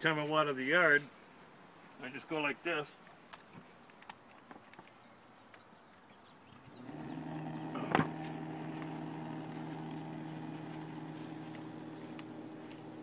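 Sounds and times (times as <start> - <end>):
sump pump motor humming: 6.6 - 13.0.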